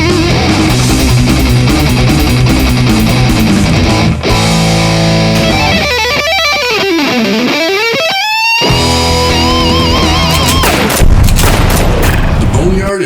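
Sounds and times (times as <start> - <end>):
lead guitar sliding in pitch: 0.0 - 10.3
rock band playing: 0.0 - 10.9.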